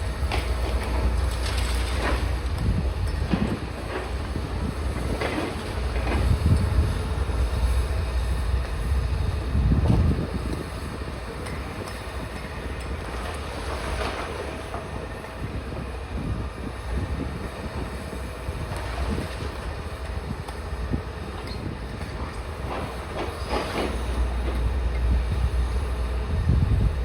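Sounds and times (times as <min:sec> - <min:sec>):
demolition machinery rumble: 0:00.0 - 0:27.0
wind buffeting microphone: 0:00.0 - 0:27.0.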